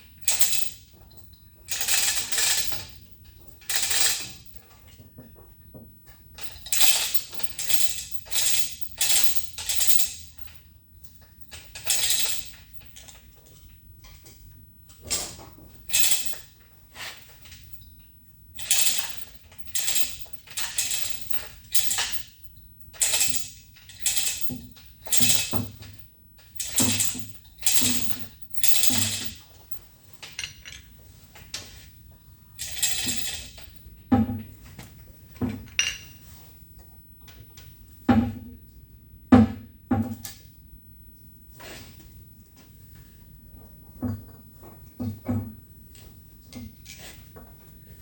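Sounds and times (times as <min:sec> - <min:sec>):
metallic clinks and scrapes: 0:00.2 - 0:05.0, 0:06.4 - 0:13.7, 0:15.8 - 0:31.9, 0:32.6 - 0:33.9.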